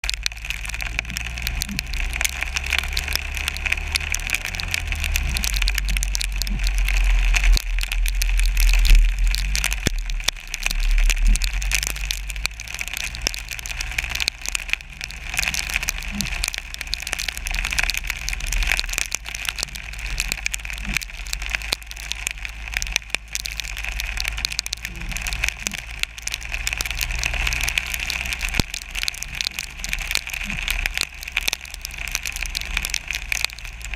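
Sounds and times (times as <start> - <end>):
freezing rain ticking on camera: 0.0 - 33.9
low driving rumble: 0.0 - 33.9
wind: 0.0 - 33.9.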